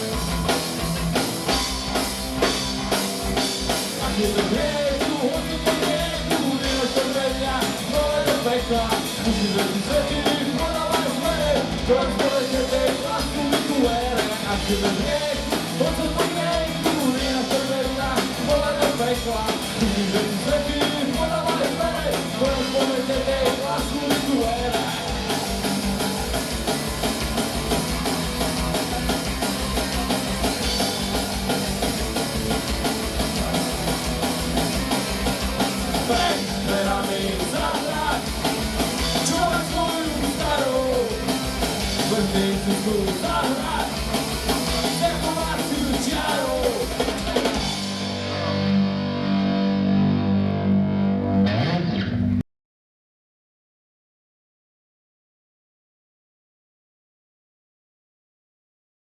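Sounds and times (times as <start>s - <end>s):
drums driving fast beat: 0.0s - 48.7s
punk rock band playing live: 0.0s - 52.0s
person singing: 3.9s - 25.1s, 35.9s - 38.4s, 39.1s - 41.3s, 41.9s - 44.0s, 44.8s - 47.6s.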